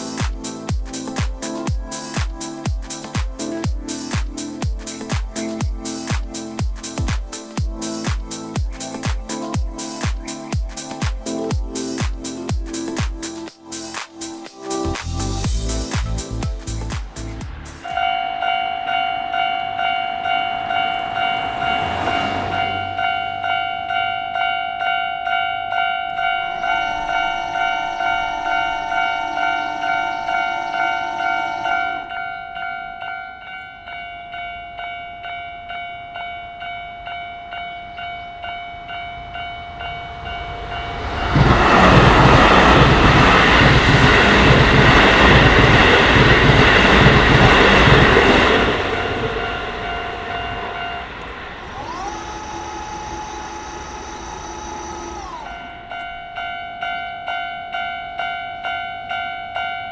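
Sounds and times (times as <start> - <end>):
train passing: 0.0 - 59.9
level crossing bell ringing: 18.0 - 41.4
train horn blast: 26.5 - 32.4.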